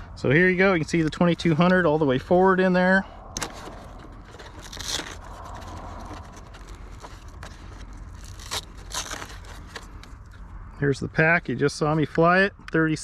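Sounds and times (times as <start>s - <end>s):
battery pack scraping and clicking: 3.3s - 10.3s.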